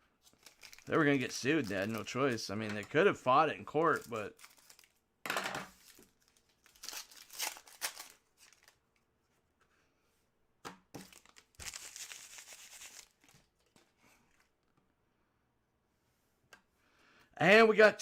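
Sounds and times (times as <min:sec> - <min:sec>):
card wrappers ripping and crinkling: 0:00.2 - 0:05.0, 0:05.7 - 0:08.8, 0:11.0 - 0:13.8.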